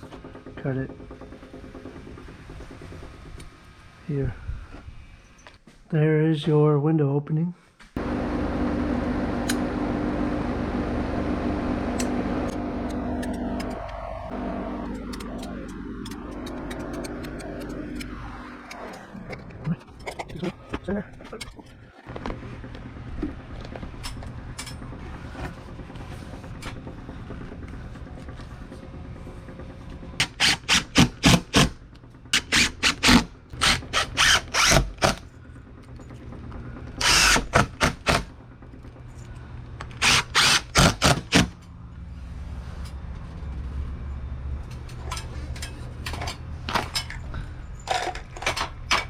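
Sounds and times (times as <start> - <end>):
steady low hum: 7.6 - 49.0
power drill bursts: 32.4 - 35.2, 37.0 - 38.3, 40.0 - 41.5.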